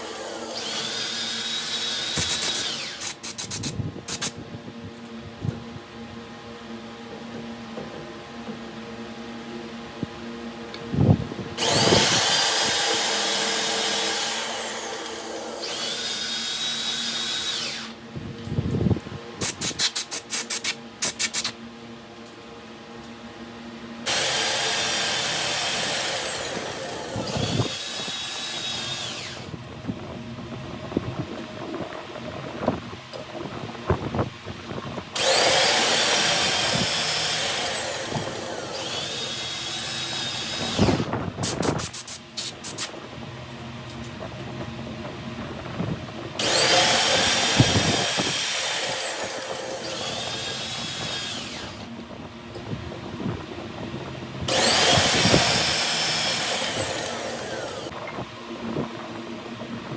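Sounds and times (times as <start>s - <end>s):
high-pitched power tool: 0.0s - 4.3s, 11.6s - 18.0s, 24.0s - 29.6s, 35.2s - 42.9s, 46.4s - 51.9s, 54.5s - 57.9s.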